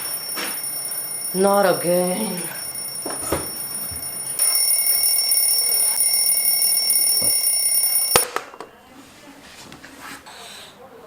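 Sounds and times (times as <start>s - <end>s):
alarm clock ringing: 0.0s - 8.3s.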